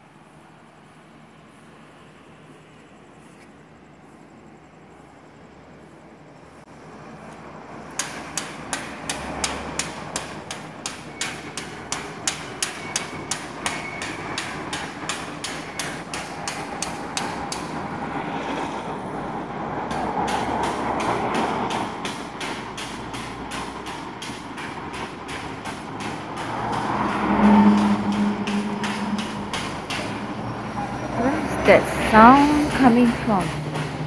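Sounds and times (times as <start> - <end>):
steady machine noise: 19.9 - 34.0.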